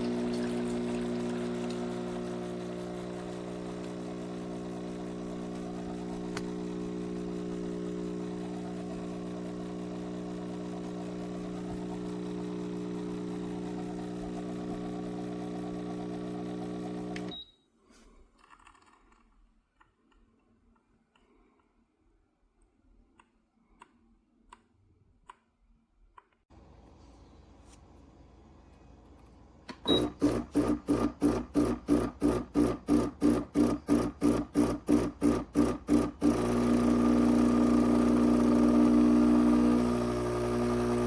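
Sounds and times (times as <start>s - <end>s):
espresso machine pump buzzing: 0.0s - 17.3s, 29.8s - 41.0s.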